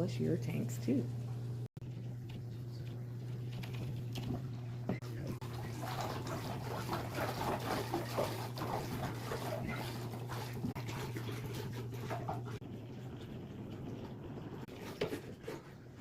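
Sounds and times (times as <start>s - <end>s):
aquarium pump hum: 0.0s - 16.0s
water splashing: 2.0s - 16.0s
rubbing and squeaking on glass: 5.8s - 12.6s.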